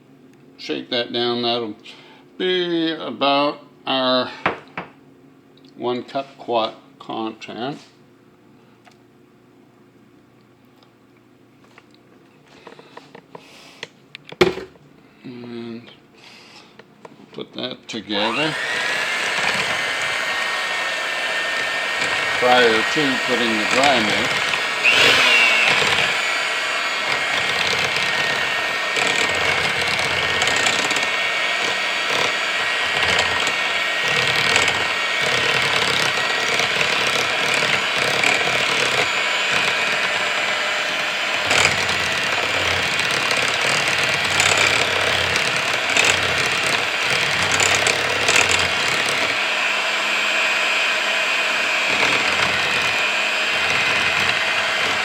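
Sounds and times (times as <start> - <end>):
kitchen mixer motor running: 18.1 - 55.0.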